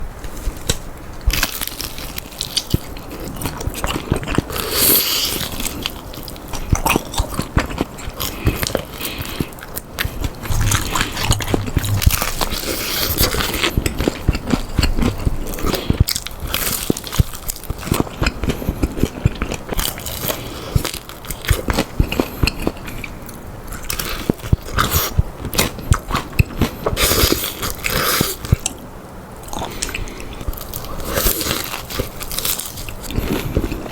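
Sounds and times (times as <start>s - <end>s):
crunching fried chicken: 29.5s - 33.9s.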